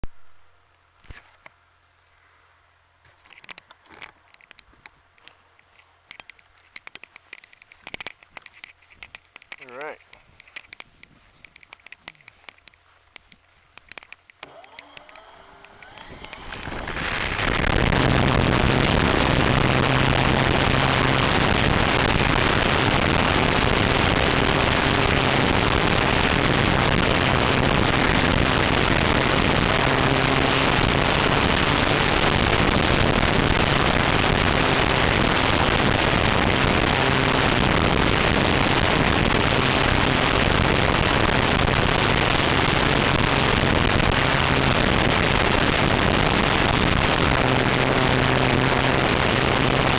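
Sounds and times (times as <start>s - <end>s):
propeller noise: 3.1s - 49.9s
faint motor hum: 12.4s - 49.9s
rush of wind: 15.7s - 49.9s.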